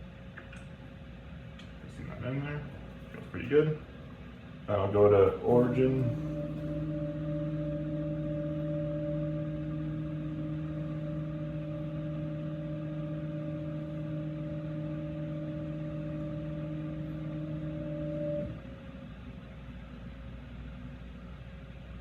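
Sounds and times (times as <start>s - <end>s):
low machine hum: 0.0s - 22.0s
motors whining: 5.5s - 18.7s.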